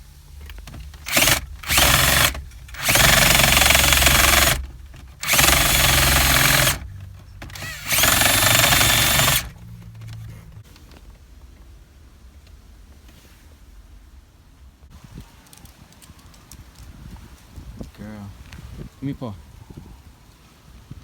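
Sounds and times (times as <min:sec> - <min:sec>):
power drill bursts: 0:00.5 - 0:09.6.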